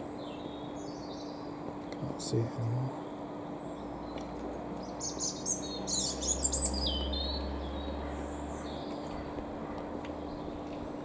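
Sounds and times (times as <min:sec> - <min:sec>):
small bird chirping: 0:03.6 - 0:10.9.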